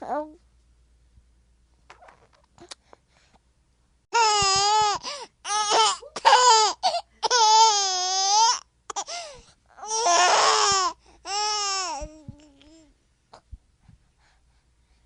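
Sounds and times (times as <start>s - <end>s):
baby squealing: 9.8s - 12.0s.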